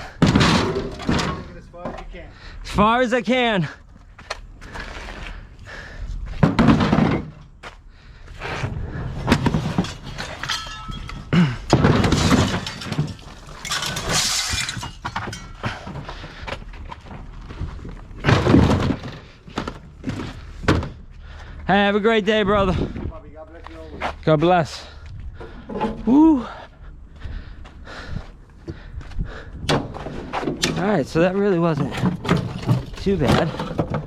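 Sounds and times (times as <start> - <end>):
scrap crashing onto a pile: 9.2 - 16.0, 18.2 - 20.9.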